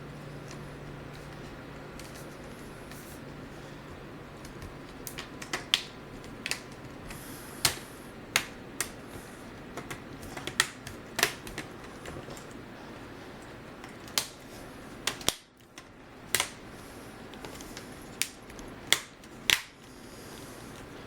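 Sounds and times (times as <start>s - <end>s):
plastic clips snapping into place: 4.4s - 7.0s, 7.6s - 9.0s, 9.7s - 12.5s, 15.0s - 16.6s, 17.4s - 19.8s.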